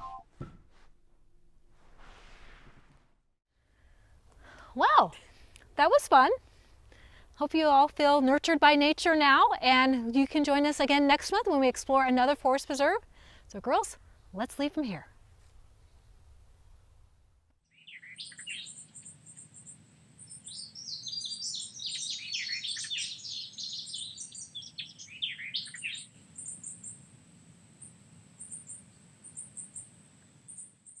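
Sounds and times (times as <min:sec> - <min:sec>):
songbirds singing and chirping: 0:17.7 - 0:27.2.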